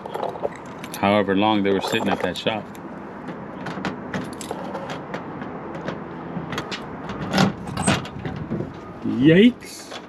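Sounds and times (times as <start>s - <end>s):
keys jangling against lock: 4.2s - 4.9s.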